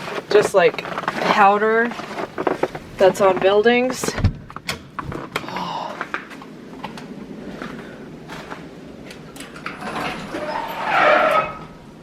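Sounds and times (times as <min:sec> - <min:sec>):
garage door rumbling: 0:09.3 - 0:12.0
garage door scraping and rattling: 0:09.3 - 0:12.0.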